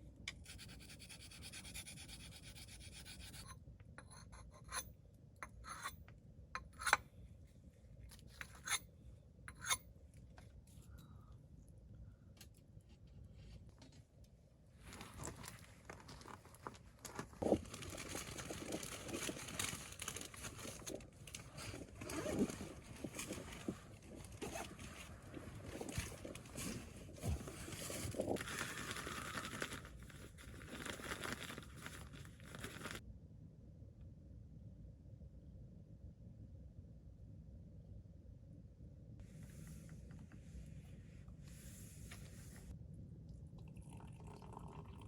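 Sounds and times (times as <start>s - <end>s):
rustling and crinkling handling: 14.8s - 33.0s.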